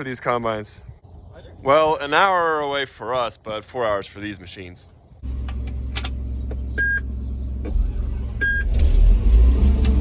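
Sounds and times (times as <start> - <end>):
short electronic beeps: 6.8 - 7.1, 8.4 - 8.7.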